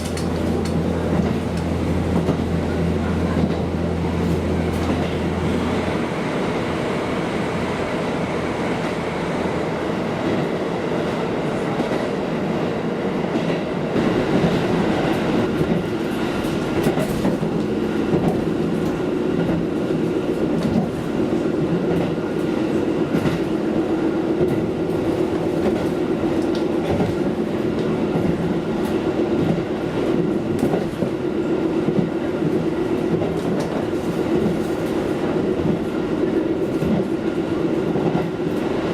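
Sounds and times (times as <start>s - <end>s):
wheels clicking over rail joints: 0.0s - 2.4s
train drone: 0.0s - 38.9s.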